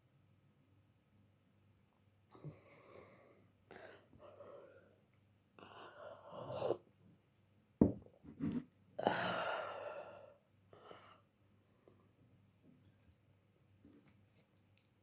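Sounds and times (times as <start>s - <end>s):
person breathing: 9.0s - 11.3s.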